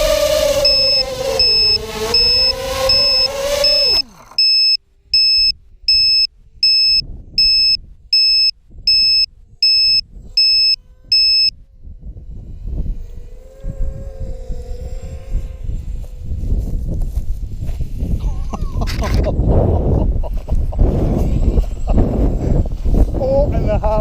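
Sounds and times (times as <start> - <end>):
drone motors whining: 0.0 - 17.3
faint wind noise: 0.0 - 24.0
high electronic beeper: 0.5 - 11.5.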